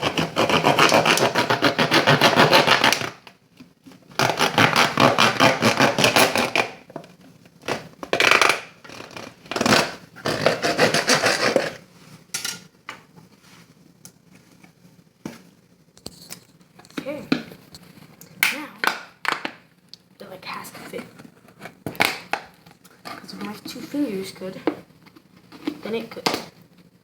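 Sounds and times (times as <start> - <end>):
knife sawing through plastic bottle: 0.0 - 3.2, 4.2 - 6.8, 8.3 - 11.8.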